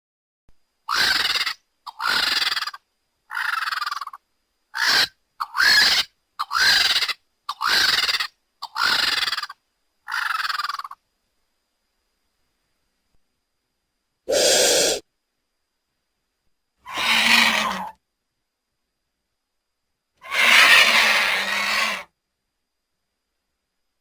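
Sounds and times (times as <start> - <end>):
rough bird cries: 0.9 - 11.0, 14.3 - 15.0, 16.8 - 18.0, 20.2 - 22.1.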